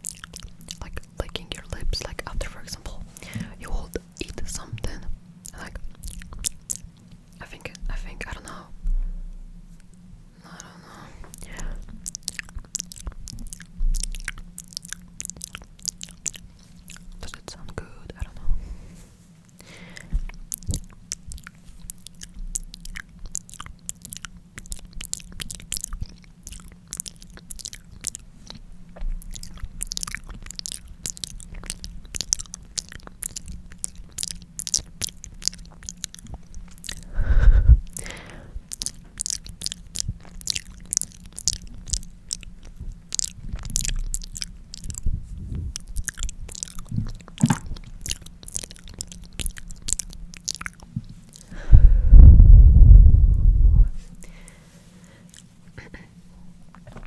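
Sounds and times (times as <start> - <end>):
lip licking wet clicks: 0.0 - 8.6, 9.8 - 18.4, 19.5 - 51.7, 54.2 - 56.1, 56.7 - 57.0
loud deep sound: 51.6 - 54.0.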